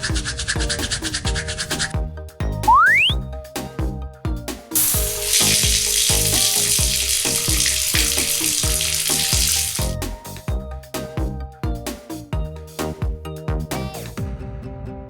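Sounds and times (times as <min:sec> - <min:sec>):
electronic music with steady beat: 0:00.0 - 0:03.3.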